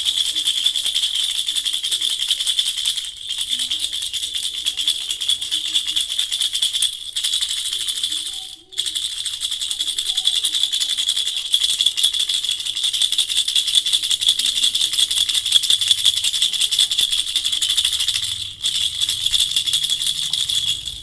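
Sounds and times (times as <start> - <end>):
baby rattle shaken rapidly: 0.0 - 21.0.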